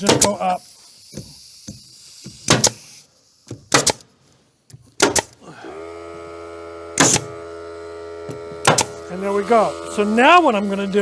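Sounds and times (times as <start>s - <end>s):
staple gun firing: 0.0s - 0.4s, 2.5s - 2.8s, 3.7s - 4.0s, 5.0s - 5.4s, 7.0s - 7.3s, 8.7s - 9.0s
motor humming: 5.0s - 11.0s.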